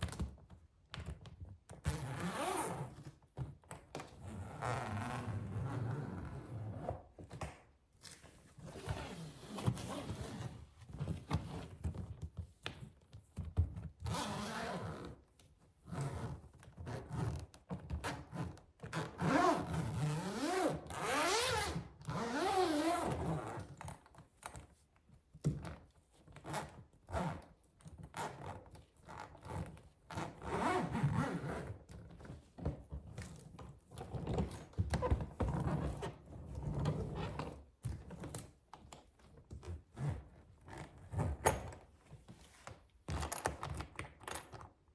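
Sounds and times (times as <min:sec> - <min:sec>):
suitcase zipper rasping: 0:01.9 - 0:03.1, 0:04.2 - 0:07.0, 0:08.6 - 0:10.6, 0:14.0 - 0:15.2, 0:18.0 - 0:23.7, 0:29.1 - 0:31.8.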